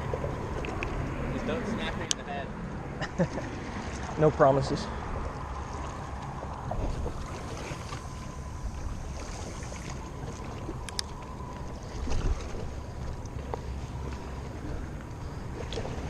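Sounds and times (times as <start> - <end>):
steady low rumble: 0.0 - 16.0
wind on microphone: 4.9 - 13.4.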